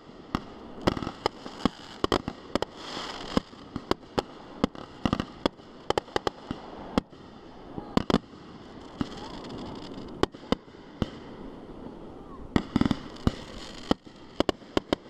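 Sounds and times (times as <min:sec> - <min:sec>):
fireworks bangs: 0:00.0 - 0:11.6, 0:12.5 - 0:15.0
hissing crackle: 0:00.0 - 0:15.0.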